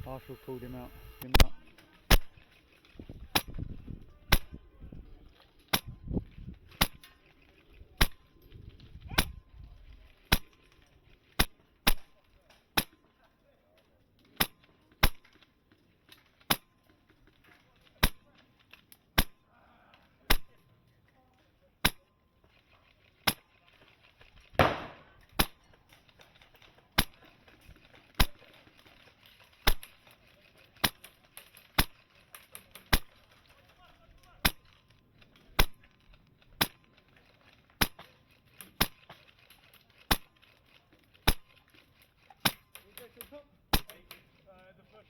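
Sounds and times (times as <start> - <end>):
airsoft gun shots: 2.1 - 2.4, 24.6 - 25.6, 43.7 - 44.0.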